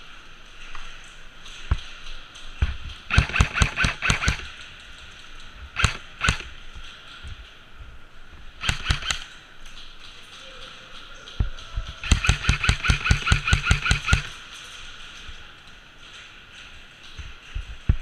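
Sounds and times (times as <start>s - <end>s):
airsoft guns firing: 3.1s - 4.6s, 5.8s - 6.6s, 8.6s - 9.4s, 12.0s - 14.4s.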